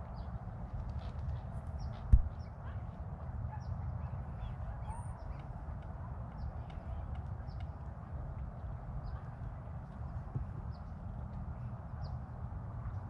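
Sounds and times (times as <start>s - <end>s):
steady low rumble: 1.8s - 2.5s.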